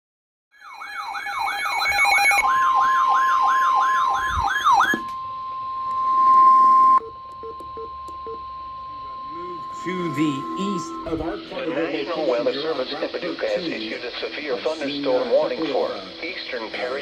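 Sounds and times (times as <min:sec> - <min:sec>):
wailing siren tone: 0:00.6 - 0:07.0, 0:08.4 - 0:11.5
steady warning tone: 0:00.8 - 0:12.2.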